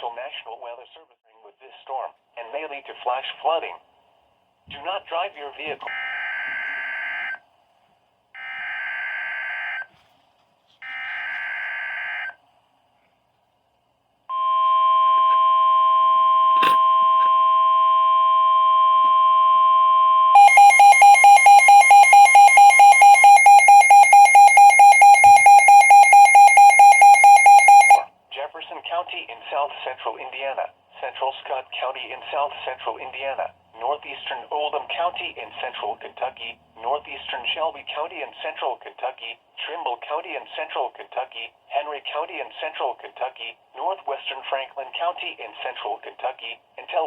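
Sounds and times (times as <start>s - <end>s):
pulsing electronic alarm beep: 14.3s - 28.0s
steady warning tone: 14.3s - 28.0s
digital data tone bursts: 20.4s - 28.0s.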